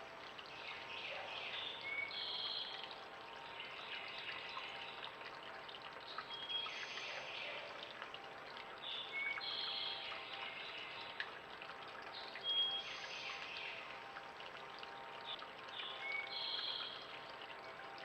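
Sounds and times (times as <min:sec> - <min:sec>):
creek flowing over rocks: 0:00.0 - 0:18.0
songbird singing: 0:00.5 - 0:02.8, 0:15.2 - 0:17.1.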